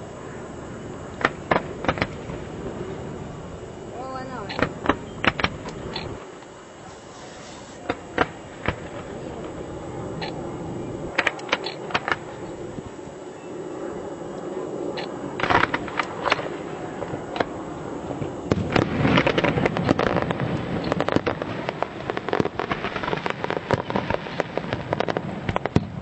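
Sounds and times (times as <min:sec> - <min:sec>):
fireworks bangs and crackling: 0:00.8 - 0:13.0, 0:14.8 - 0:26.0.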